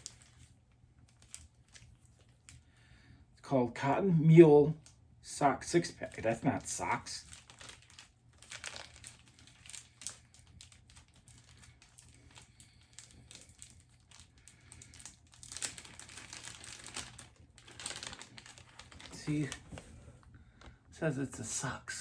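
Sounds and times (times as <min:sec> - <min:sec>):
packaging crinkling and rustling: 0:00.0 - 0:02.6, 0:05.8 - 0:20.8.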